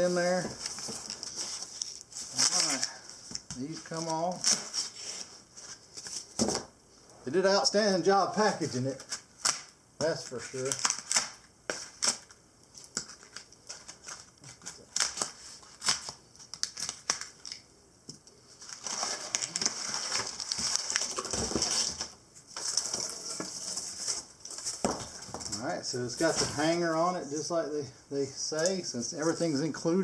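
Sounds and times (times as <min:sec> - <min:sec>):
packaging rustling: 0:00.1 - 0:06.6, 0:08.8 - 0:17.6, 0:18.5 - 0:25.6.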